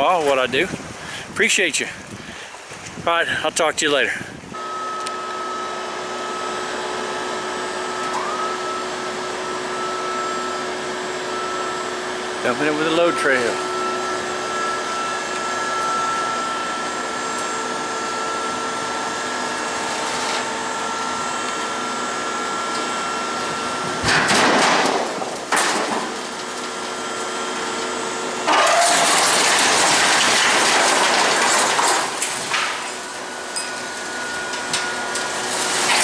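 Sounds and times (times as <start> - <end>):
hydraulic pump whining: 4.5 - 36.0
rock and debris sliding out: 28.5 - 33.0, 35.2 - 36.0.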